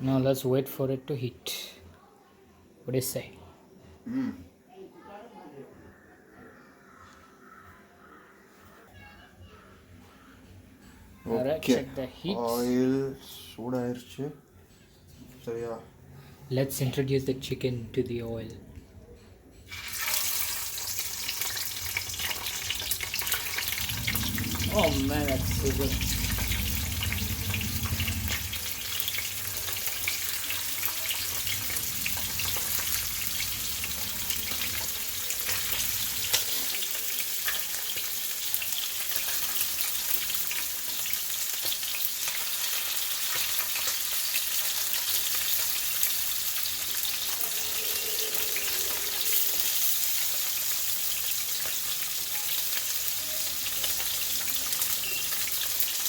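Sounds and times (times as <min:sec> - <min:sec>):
chicken frying in oil: 0:19.7 - 0:56.0.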